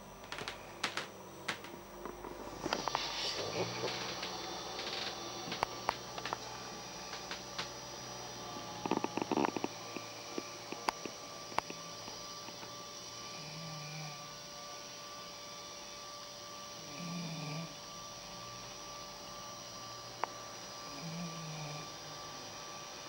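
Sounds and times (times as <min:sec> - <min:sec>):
electrical hum: 0:00.0 - 0:23.0
clicks and rustles: 0:00.1 - 0:07.8
soft low snore: 0:02.2 - 0:06.4, 0:08.4 - 0:12.0, 0:16.8 - 0:17.8, 0:20.8 - 0:22.4.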